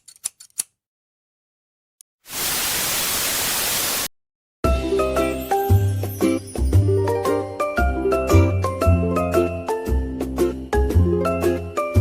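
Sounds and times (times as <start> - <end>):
static hiss burst: 2.2 - 4.1
jingly music with bass line: 4.9 - 11.6.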